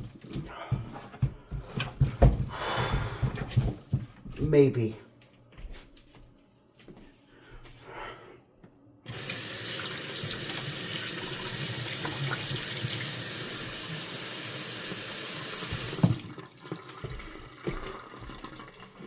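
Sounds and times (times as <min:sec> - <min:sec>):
water running into sink: 0:09.1 - 0:19.0.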